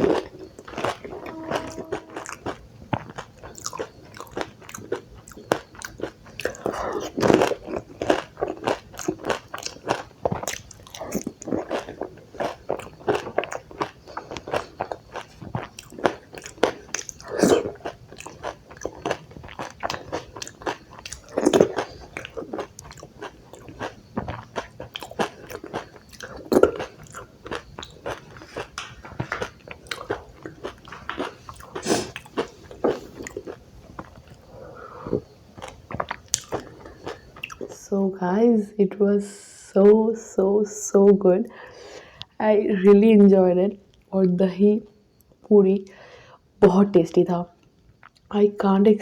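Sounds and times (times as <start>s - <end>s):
wet chewing: 0.0s - 37.8s.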